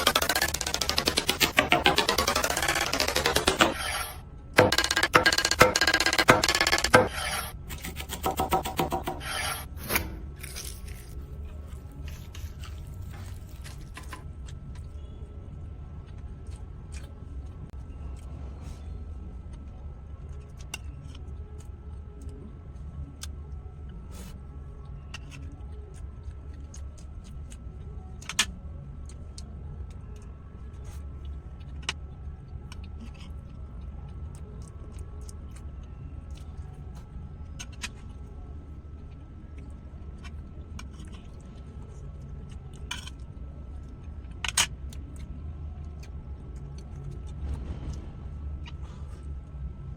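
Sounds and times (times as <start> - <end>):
rapid rasping rubbing strokes: 0.0 - 9.7.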